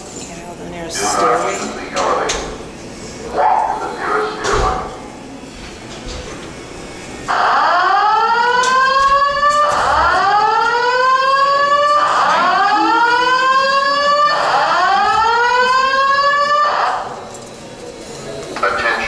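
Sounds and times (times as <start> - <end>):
fire alarm slow-whoop tone: 7.3 - 17.1.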